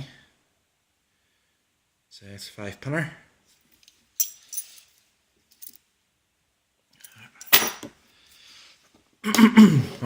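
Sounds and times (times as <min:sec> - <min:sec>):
person coughing: 0:09.2 - 0:10.0.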